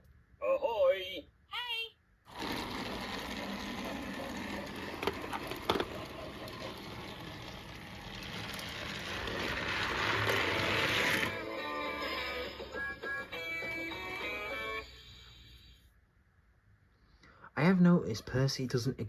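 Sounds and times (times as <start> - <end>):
toy train motor whir and rattle: 2.3 - 13.0.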